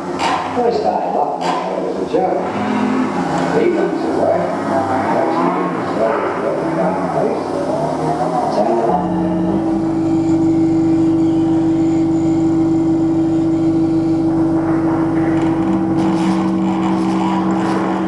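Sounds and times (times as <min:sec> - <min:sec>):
dense engine-like hum: 0:00.8 - 0:18.0
electronic drone held tone: 0:02.3 - 0:18.0
lower held electronic tone: 0:06.6 - 0:18.0.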